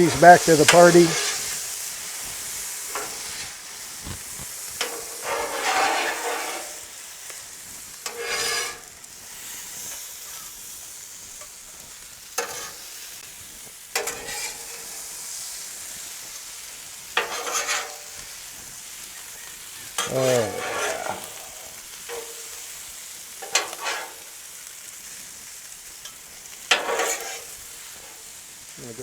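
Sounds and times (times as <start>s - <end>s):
spatula scraping steel cooktop: 0.0s - 1.8s, 2.9s - 6.8s, 8.0s - 8.9s, 14.0s - 15.0s, 17.2s - 18.1s, 20.0s - 22.4s, 23.4s - 24.2s, 26.7s - 28.2s
food sizzling on griddle: 0.0s - 29.0s.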